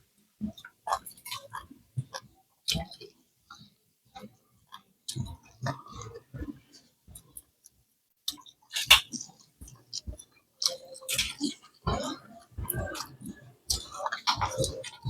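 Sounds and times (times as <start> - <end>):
person chewing: 10.0 - 15.0.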